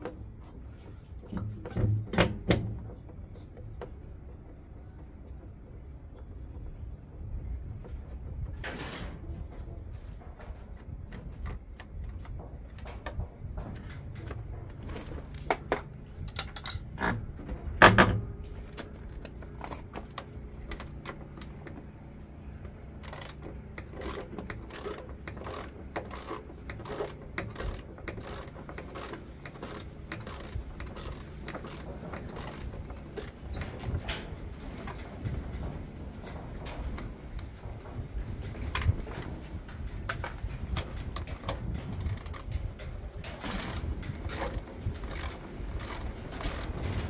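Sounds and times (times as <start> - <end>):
steady clicks: 10.7 - 47.0
metal clinks and knocks: 11.9 - 21.9.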